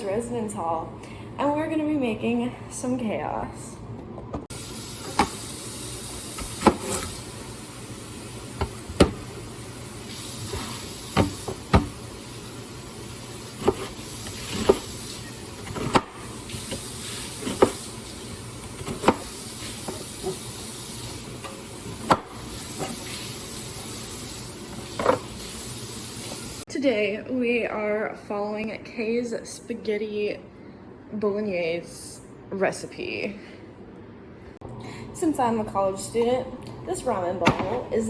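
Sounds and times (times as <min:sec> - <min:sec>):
food sizzling in a pan: 0:04.5 - 0:26.6.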